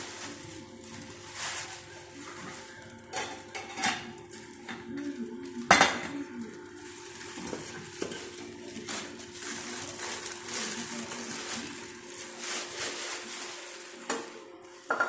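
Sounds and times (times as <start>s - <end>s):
pots and lids clinking: 3.0s - 5.0s.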